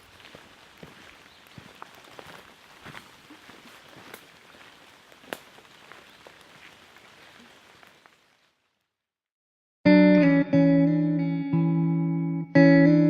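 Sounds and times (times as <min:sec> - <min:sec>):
close raindrops striking: 0:00.0 - 0:09.0
steady rain in forest: 0:00.0 - 0:09.0.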